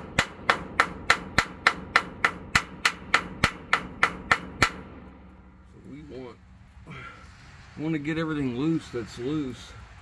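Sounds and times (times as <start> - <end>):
hammer striking metal: 0.0 - 5.1.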